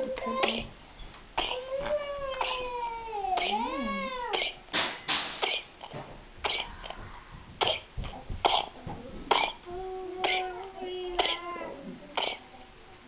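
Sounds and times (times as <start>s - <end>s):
baby wavering voiced sound: 0.0s - 0.7s, 1.5s - 4.4s, 9.6s - 12.5s
baby coughing harshly: 0.2s - 0.7s, 1.4s - 1.8s, 2.4s - 4.6s, 5.3s - 6.8s, 7.6s - 9.6s, 10.2s - 12.5s.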